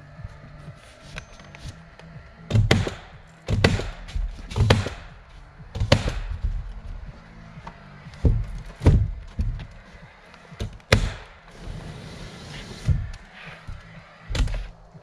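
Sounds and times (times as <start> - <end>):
hammer nailing into wood: 2.5 - 6.6, 10.6 - 11.3.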